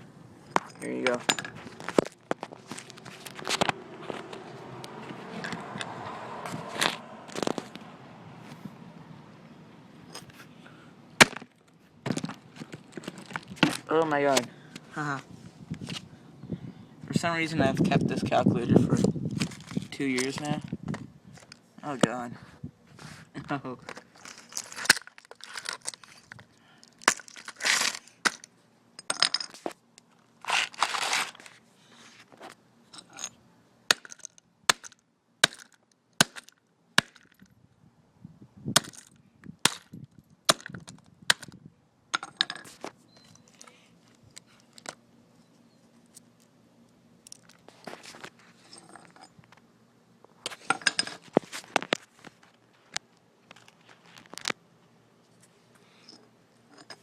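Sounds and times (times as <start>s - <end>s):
plastic calculator being smashed: 11.2s - 12.4s, 26.9s - 28.5s, 33.9s - 37.4s, 38.8s - 41.5s
plastic crunching and snapping: 23.9s - 28.5s.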